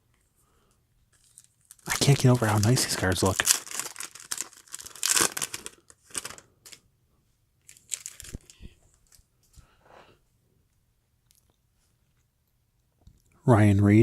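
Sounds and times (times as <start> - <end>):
trading cards rustling: 1.1 - 6.8, 7.6 - 9.2.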